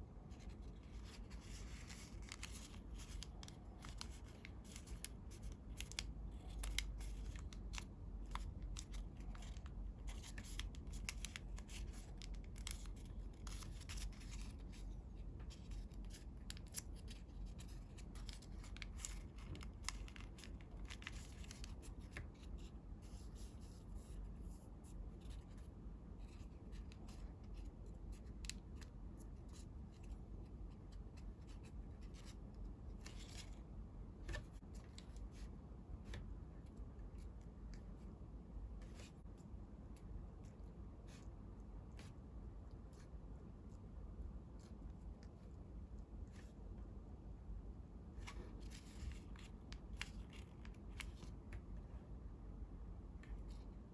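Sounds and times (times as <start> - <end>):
low steady hum: 0.0 - 53.9
paper being folded and creased: 0.3 - 24.1.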